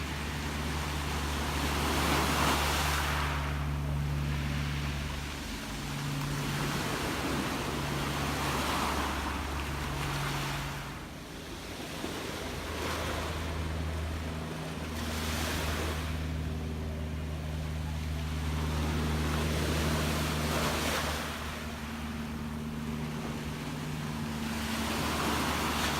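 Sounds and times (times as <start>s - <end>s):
sea waves washing: 0.0s - 25.9s
steady low hum: 0.0s - 25.9s.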